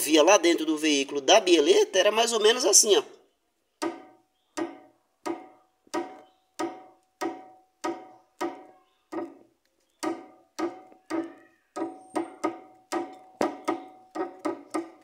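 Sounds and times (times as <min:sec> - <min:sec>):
suspension link knocking: 0:03.8 - 0:15.0.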